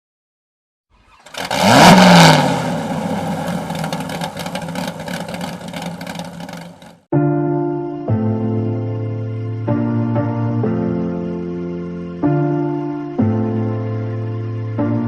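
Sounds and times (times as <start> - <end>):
vehicle engine starting and idling: 1.0 - 7.0.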